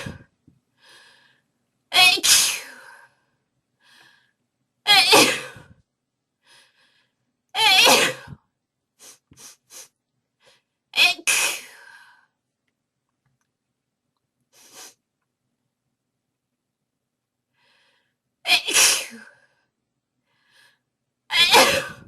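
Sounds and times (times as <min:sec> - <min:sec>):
person sneezing: 0:07.6 - 0:08.4, 0:18.6 - 0:19.2, 0:21.3 - 0:22.0.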